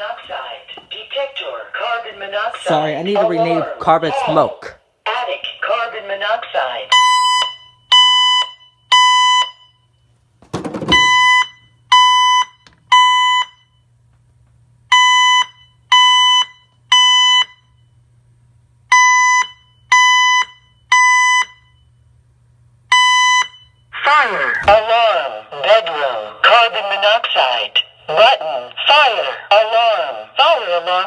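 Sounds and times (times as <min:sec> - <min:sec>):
thump: 0:10.4 - 0:11.3
alarm panel high beeps: 0:10.9 - 0:13.6.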